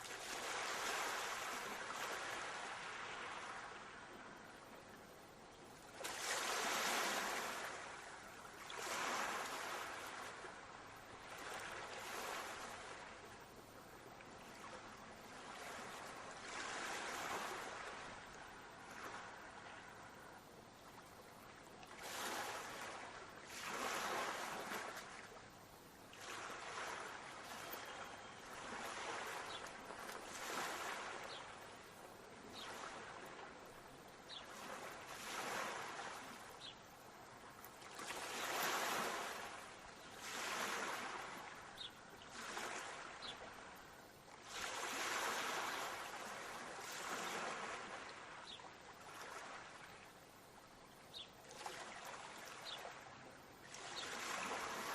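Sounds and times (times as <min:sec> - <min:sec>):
sea waves washing onto shore: 0:00.0 - 0:04.0, 0:05.9 - 0:13.2, 0:26.2 - 0:31.9, 0:37.8 - 0:43.6, 0:44.4 - 0:49.9.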